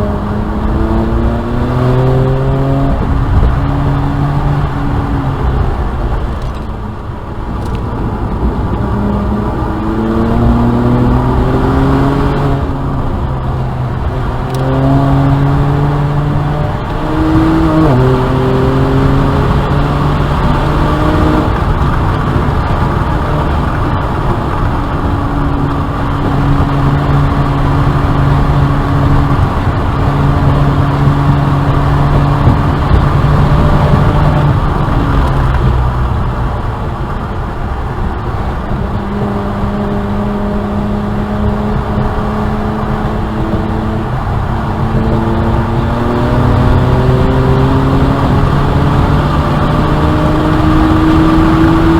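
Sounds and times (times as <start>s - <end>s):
car engine accelerating: 0.0s - 51.9s.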